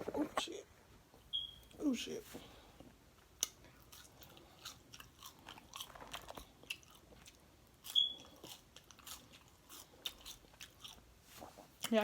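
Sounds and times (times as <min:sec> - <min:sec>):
chewing and biting food: 0:03.2 - 0:12.0.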